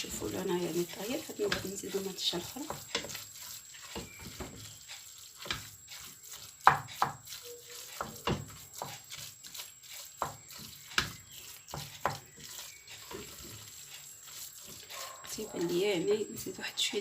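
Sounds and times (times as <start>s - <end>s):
metal spoon scraping a pot: 0.0s - 16.9s
minced meat sizzling: 0.0s - 17.0s.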